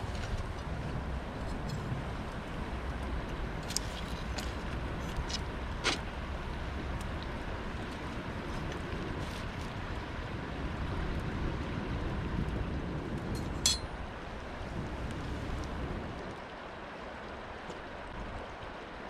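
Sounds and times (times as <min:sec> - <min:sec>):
rushing outdoor background noise: 0:00.0 - 0:19.0
sharp metallic clink: 0:13.4 - 0:13.9.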